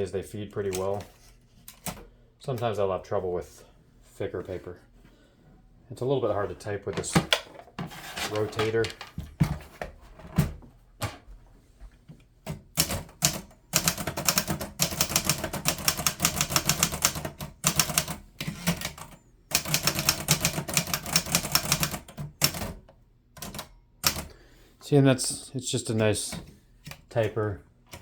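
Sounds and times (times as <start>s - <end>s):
typewriter keystrokes: 12.5s - 22.8s, 23.4s - 24.3s.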